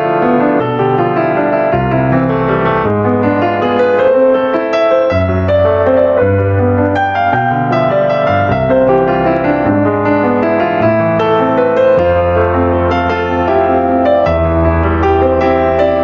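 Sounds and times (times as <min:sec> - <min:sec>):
piano melody over bass notes: 0:00.0 - 0:16.0.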